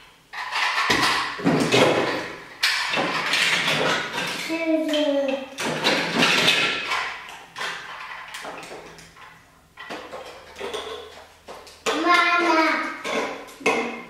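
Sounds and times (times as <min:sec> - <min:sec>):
plastic bricks clattering: 0:00.3 - 0:14.0
person speaking: 0:11.9 - 0:14.0.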